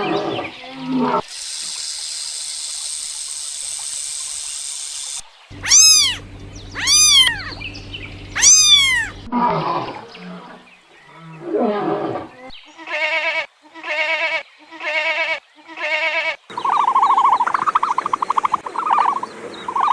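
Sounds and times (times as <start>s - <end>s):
wavering animal calls: 0.9s - 10.1s
high trilling call: 1.2s - 9.3s
rising-then-falling animal call: 5.5s - 6.2s, 6.8s - 7.7s, 8.3s - 10.0s
low rough growling calls: 5.5s - 12.3s.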